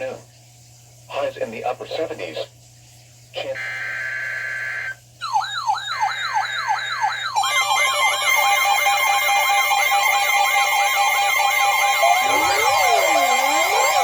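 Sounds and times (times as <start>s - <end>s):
electronic siren tones sweeping: 3.6s - 14.0s
steady high alert tone: 3.6s - 14.0s.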